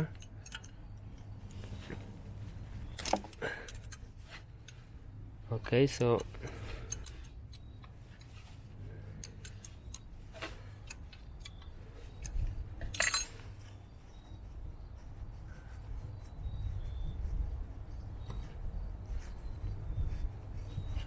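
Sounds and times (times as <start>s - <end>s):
hand tools clinking on metal: 12.8s - 13.5s.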